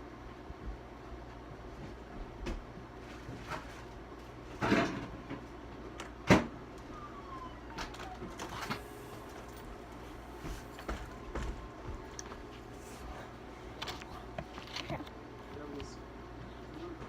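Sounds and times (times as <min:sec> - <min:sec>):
faint falling whistle-like tone: 0:06.8 - 0:09.2.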